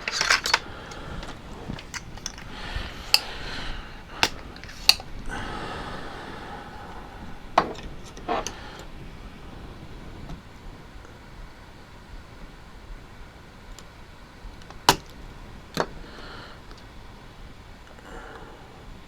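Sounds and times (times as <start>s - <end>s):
hand tools clicking and tapping: 0.0s - 5.4s, 7.6s - 8.9s.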